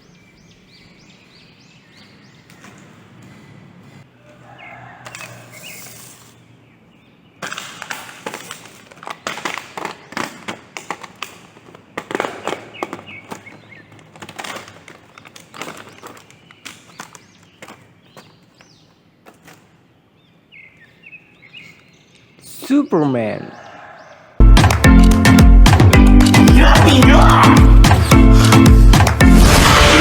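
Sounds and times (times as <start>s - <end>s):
plastic packaging crackling: 7.6s - 17.9s.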